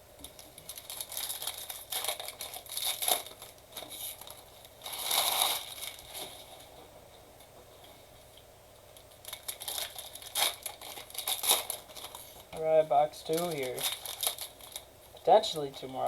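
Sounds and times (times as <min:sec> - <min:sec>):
plastic packaging tearing and crinkling: 0:00.2 - 0:06.7, 0:09.2 - 0:12.4, 0:13.2 - 0:15.9.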